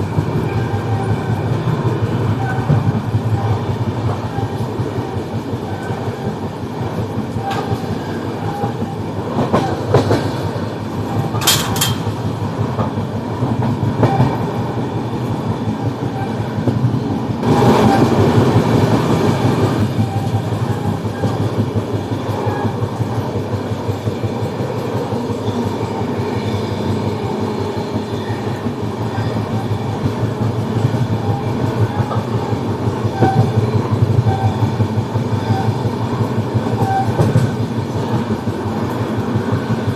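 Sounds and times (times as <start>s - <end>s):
wheels clicking over rail joints: 0.0s - 14.6s, 15.2s - 39.9s
train coach rumble: 0.0s - 39.9s.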